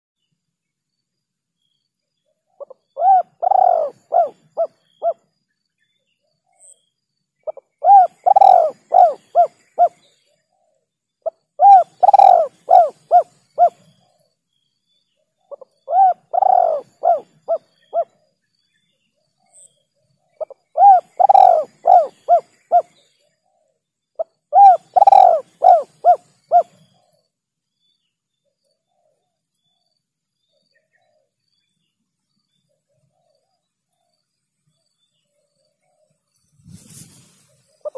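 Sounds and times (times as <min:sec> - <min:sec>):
dove cooing: 0:02.6 - 0:05.2, 0:07.5 - 0:10.0, 0:11.2 - 0:13.8, 0:15.5 - 0:18.1, 0:20.4 - 0:23.0, 0:24.5 - 0:26.8.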